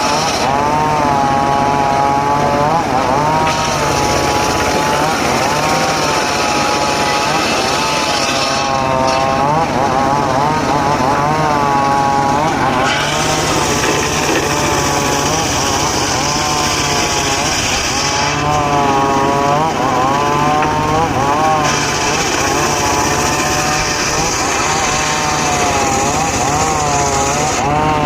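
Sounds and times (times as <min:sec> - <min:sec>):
sawmill motor labouring: 0:00.0 - 0:28.0
saw blade cutting wood hiss: 0:03.3 - 0:09.5, 0:11.8 - 0:27.7.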